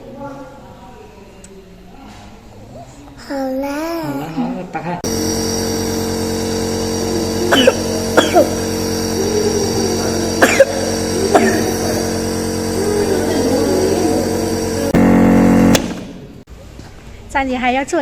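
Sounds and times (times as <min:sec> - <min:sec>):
nebulizer compressor buzzing hum: 0:05.0 - 0:16.5
child coughing: 0:07.4 - 0:08.6, 0:10.0 - 0:12.1.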